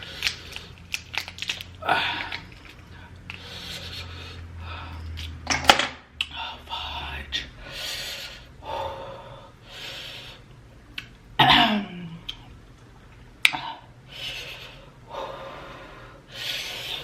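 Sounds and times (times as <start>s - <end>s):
person breathing hard: 0.0s - 0.8s, 1.8s - 5.2s, 6.3s - 10.5s, 13.5s - 17.0s.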